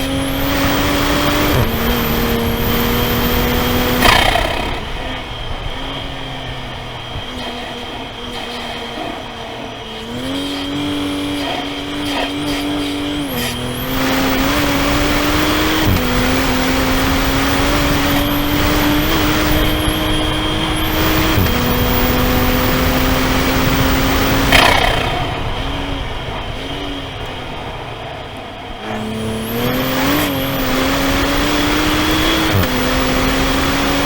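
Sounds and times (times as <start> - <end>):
car engine accelerating: 0.0 - 34.0.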